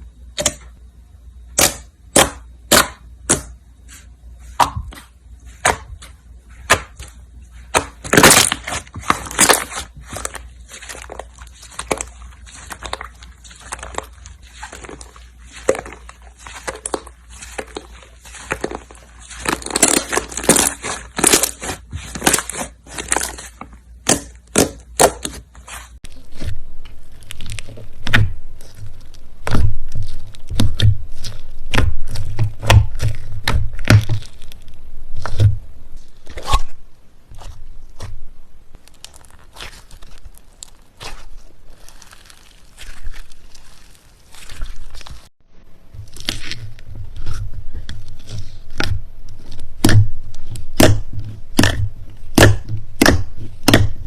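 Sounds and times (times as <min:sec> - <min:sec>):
low steady hum: 0:00.0 - 0:54.0
slime crackling and popping: 0:07.7 - 0:36.7, 0:38.7 - 0:45.3, 0:46.0 - 0:54.0.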